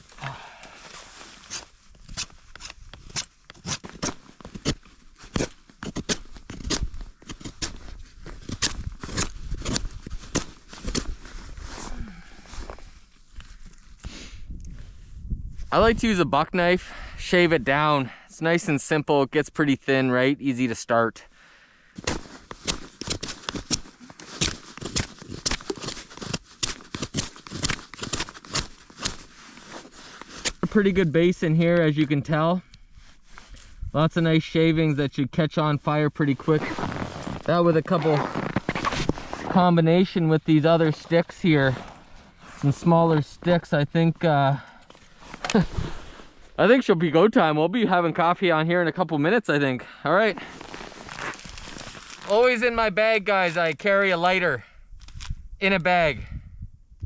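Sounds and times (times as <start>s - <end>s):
knife shaving a stick: 22.0s - 30.7s.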